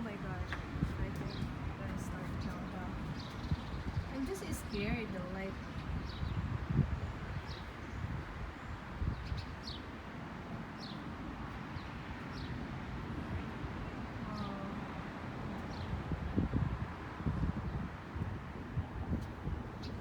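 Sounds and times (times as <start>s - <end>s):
birds chirping: 0.0s - 6.6s, 10.8s - 12.8s
wind gusts on microphone: 0.0s - 20.0s.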